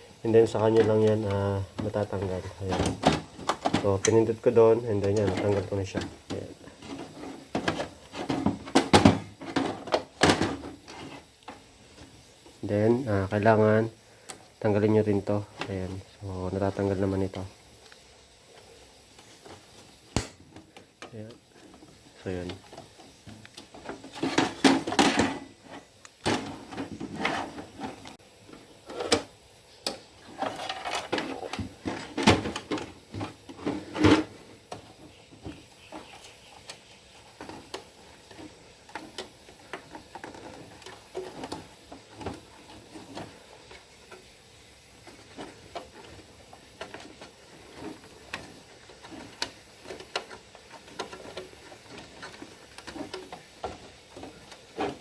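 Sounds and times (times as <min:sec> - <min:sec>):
knocks clicks and rattles in computer case: 0:07.6 - 0:10.6.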